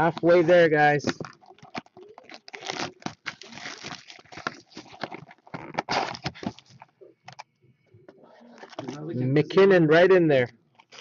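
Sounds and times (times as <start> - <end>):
foil wrapper tearing and rustling: 1.0 - 6.8, 10.8 - 11.0.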